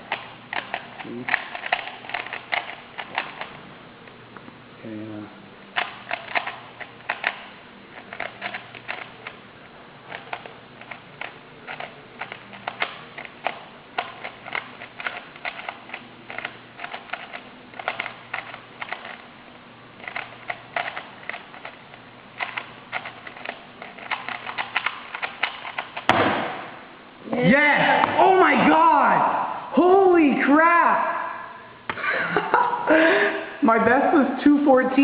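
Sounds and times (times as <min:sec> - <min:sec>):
puzzle cube layers clicking: 0:10.1 - 0:19.2, 0:22.4 - 0:26.1.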